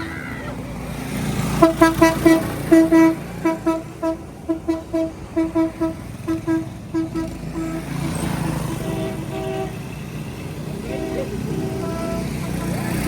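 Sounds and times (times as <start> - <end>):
vehicle horn honking in short toots: 1.6 - 8.0, 8.6 - 9.8, 10.8 - 13.0.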